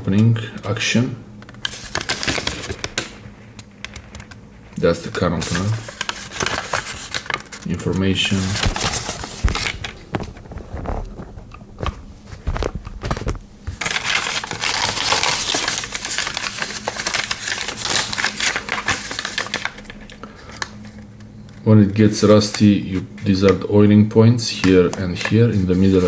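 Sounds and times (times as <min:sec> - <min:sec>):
paper rustling: 0:01.5 - 0:03.1, 0:04.9 - 0:21.1, 0:24.5 - 0:26.0.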